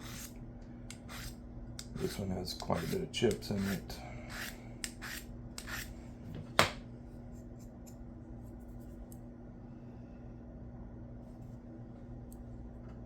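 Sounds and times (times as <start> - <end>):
steady low hum: 0.0 - 13.0
knife scraping sharpening stone: 3.7 - 5.9.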